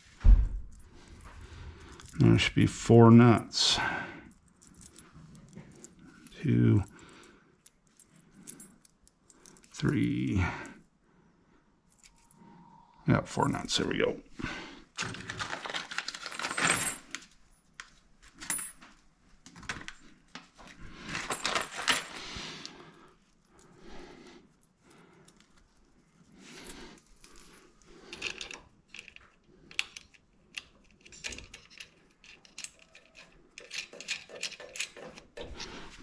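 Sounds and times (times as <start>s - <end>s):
metal nuts and bolts clinking: 15.0s - 18.9s, 21.0s - 22.8s, 26.5s - 35.9s.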